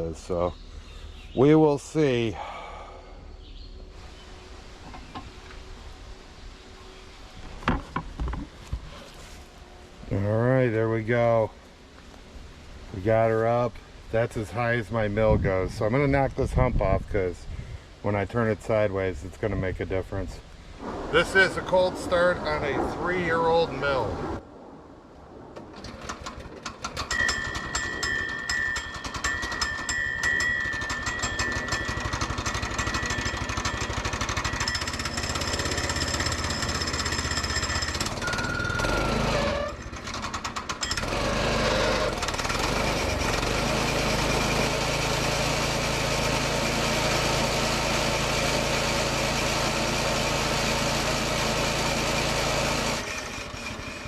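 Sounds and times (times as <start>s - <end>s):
small engine running rough: 25.8s - 54.0s.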